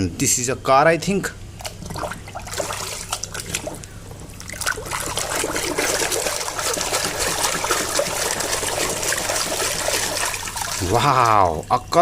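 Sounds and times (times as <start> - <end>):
water splashing: 1.6 - 11.5
hands scrubbing plastic toy: 5.2 - 11.1.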